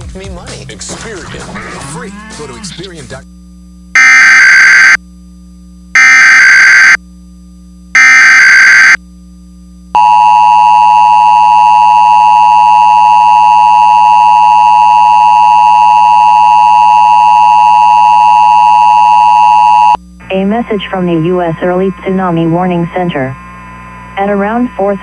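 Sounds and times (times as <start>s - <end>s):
digital data tone bursts: 4.0s - 5.0s, 6.0s - 7.0s, 8.0s - 9.0s
two-tone attention signal: 8.0s - 9.0s, 10.0s - 20.0s.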